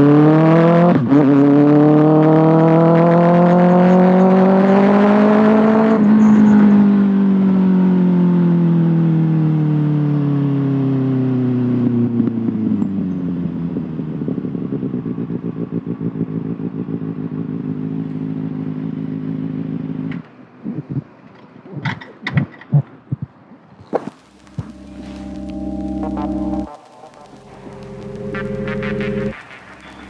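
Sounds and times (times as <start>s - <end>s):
motorcycle engine revs falling: 0.0s - 8.0s.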